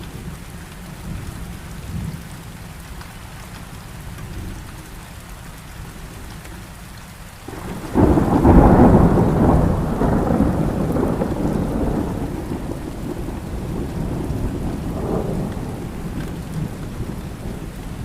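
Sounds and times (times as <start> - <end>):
steady rainfall: 0.0 - 18.0
thunder rumbling: 7.5 - 18.0.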